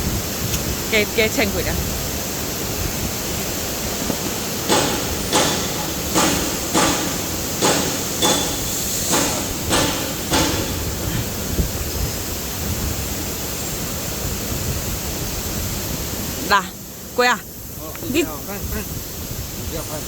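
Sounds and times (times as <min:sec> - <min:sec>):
steady machine hiss: 0:00.0 - 0:20.0
machine knocking: 0:04.2 - 0:11.4.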